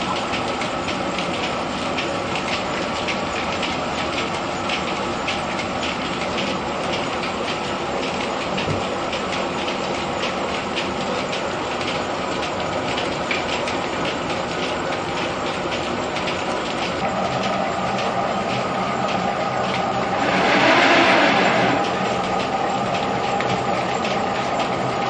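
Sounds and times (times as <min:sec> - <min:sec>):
threshing machine clattering: 0:00.0 - 0:25.0
loud rushing noise: 0:20.0 - 0:22.0.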